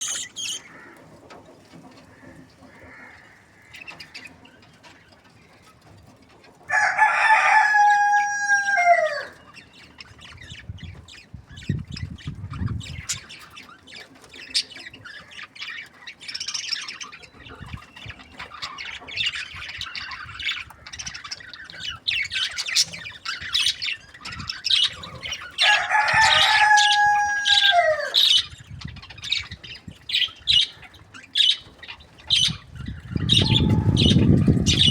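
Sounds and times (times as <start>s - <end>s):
small birds chirping: 0.0s - 34.9s
rooster crowing: 6.7s - 9.4s, 25.6s - 28.3s, 33.2s - 34.9s.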